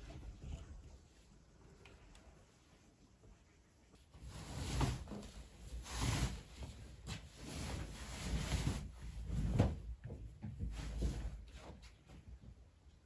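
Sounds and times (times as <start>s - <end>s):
soft thuds and rustles: 4.3s - 12.3s.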